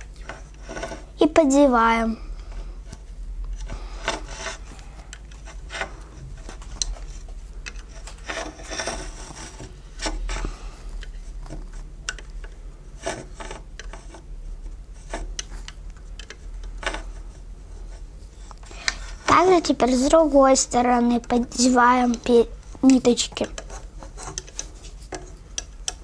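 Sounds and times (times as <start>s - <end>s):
low steady hum: 0.0s - 26.0s
crochet hook scraping loom pegs: 14.9s - 20.2s, 21.2s - 26.0s.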